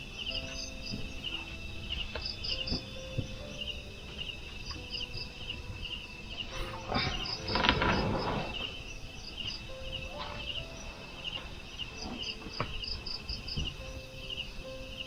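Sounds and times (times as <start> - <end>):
night insects chirping: 0.0 - 15.0
rustling: 4.2 - 13.9.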